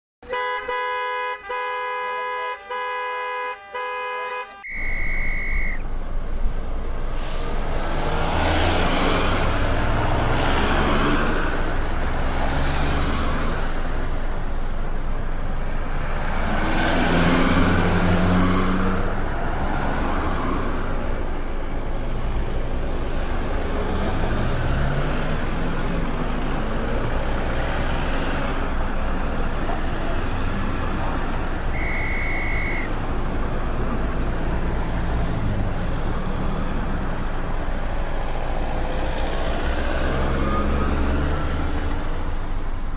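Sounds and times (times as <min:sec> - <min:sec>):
traffic engines rumbling: 0:00.2 - 0:42.9
vehicles passing: 0:00.2 - 0:42.9
short high beep: 0:04.6 - 0:05.8, 0:31.7 - 0:32.9.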